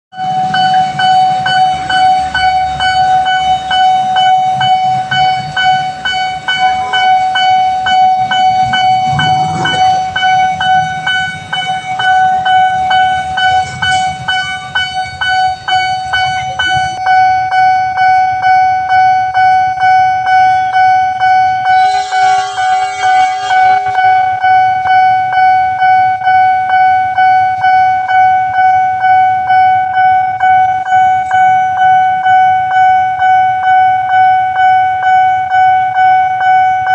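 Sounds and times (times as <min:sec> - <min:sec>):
pulsing electronic warning tone: 0:00.2 - 0:36.9
horn: 0:21.7 - 0:24.7.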